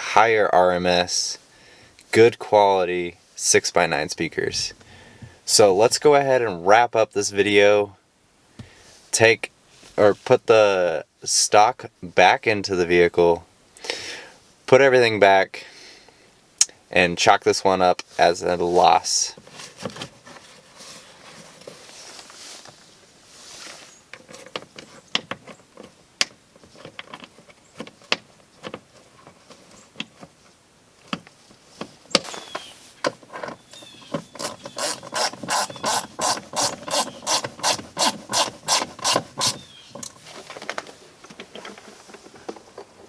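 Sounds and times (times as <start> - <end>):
socket ratchet clicking: 34.4 - 39.6.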